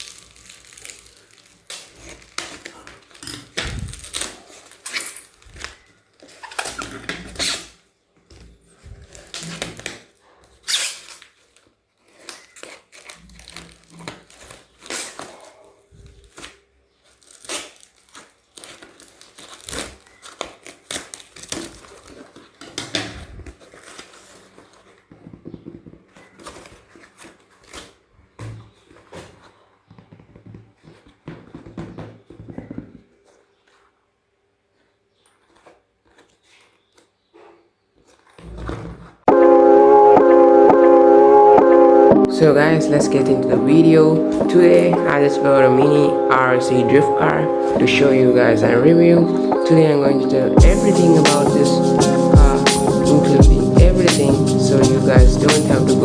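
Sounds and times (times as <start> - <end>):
packaging tearing and crinkling: 0.0 - 7.8, 9.1 - 15.5, 16.2 - 25.0.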